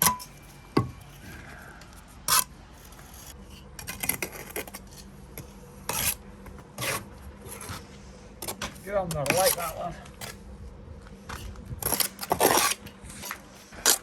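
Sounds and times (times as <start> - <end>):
trowel scraping on brick: 2.2 - 6.2, 6.8 - 8.6, 9.2 - 10.4, 11.8 - 14.0.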